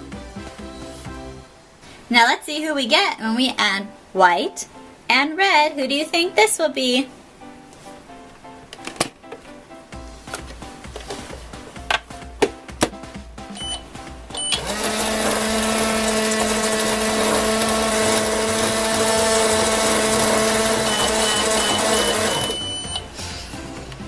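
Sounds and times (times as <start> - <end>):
microwave humming: 9.9 - 23.2
microwave beeps: 13.5 - 15.9, 17.4 - 23.2.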